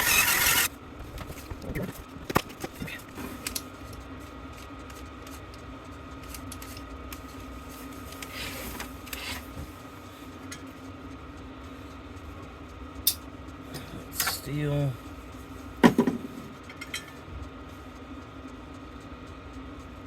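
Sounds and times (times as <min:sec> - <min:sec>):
small electric motor running: 0:00.0 - 0:00.8.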